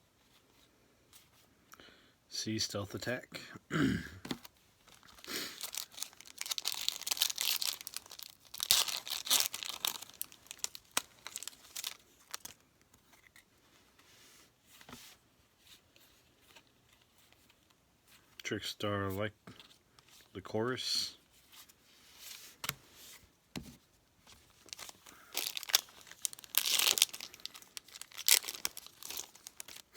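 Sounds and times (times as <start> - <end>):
foil wrapper tearing and crinkling: 5.2 - 12.6, 24.6 - 29.9.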